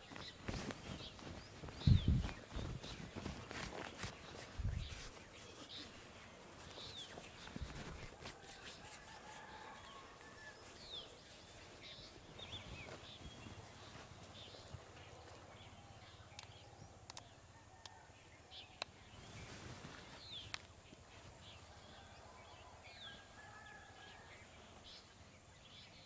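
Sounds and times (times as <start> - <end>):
birds chirping: 0.0 - 17.5.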